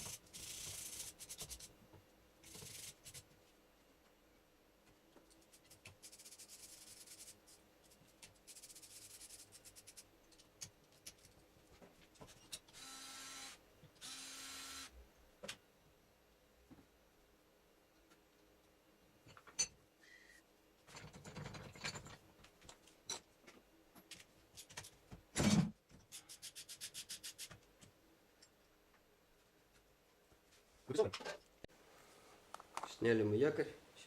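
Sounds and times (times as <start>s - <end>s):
short buzzing bursts: 12.8s - 14.9s.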